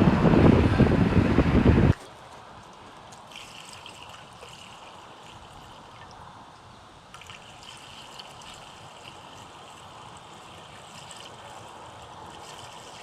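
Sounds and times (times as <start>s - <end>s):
gasoline trickling into jerry can: 2.0s - 6.3s, 7.1s - 13.0s.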